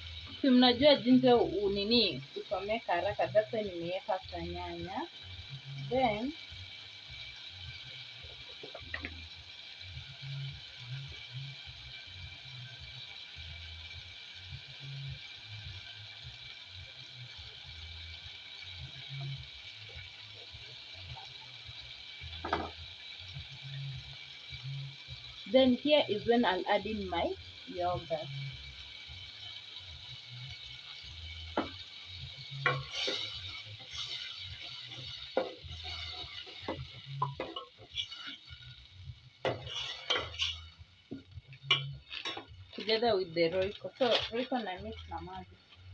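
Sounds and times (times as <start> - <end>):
low sizzle: 0.0 - 45.9
pot hissing on stove: 0.0 - 45.9
spoon scraping in cooking pot: 35.8 - 38.6, 39.4 - 40.8
utensil clink or scrape: 39.5 - 40.7.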